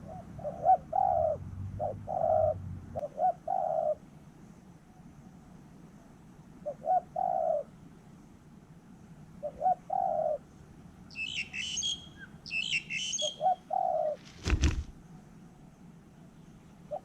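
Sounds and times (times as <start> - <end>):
dove cooing: 0.0 - 4.1, 6.6 - 7.7, 9.4 - 10.5, 12.6 - 14.8
small bird chirping: 11.1 - 14.6.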